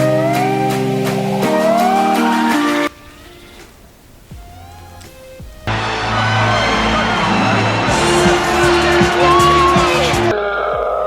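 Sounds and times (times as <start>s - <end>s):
background music: 0.0s - 11.0s
heavy steady bass: 3.1s - 10.4s
low falling sweeps: 4.2s - 10.3s.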